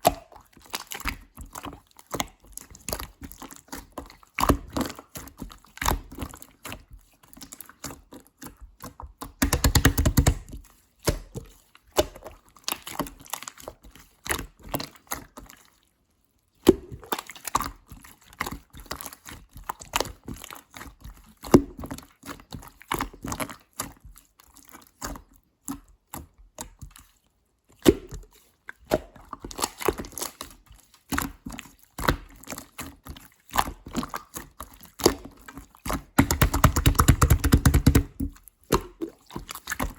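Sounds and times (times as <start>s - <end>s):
slime squelch: 0.0s - 39.9s.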